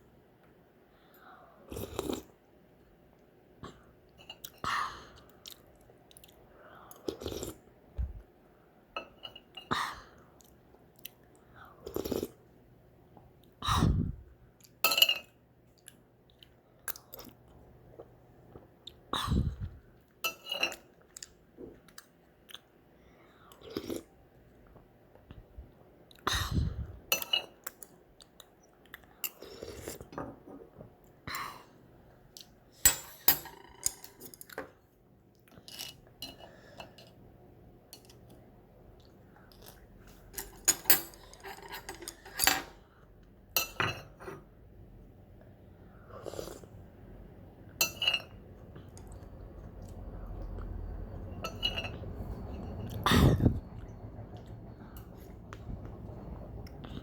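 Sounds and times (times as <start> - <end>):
utensils clinking on a bowl: 14.9 - 15.4, 20.2 - 21.0, 32.8 - 34.6, 40.1 - 42.8, 43.6 - 44.4, 47.8 - 48.4, 51.2 - 53.0.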